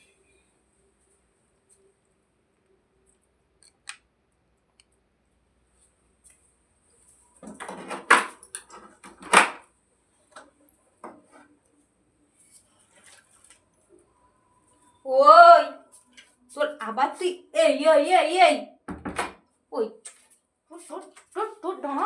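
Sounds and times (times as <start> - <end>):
rustling and clattering: 7.0 - 9.6.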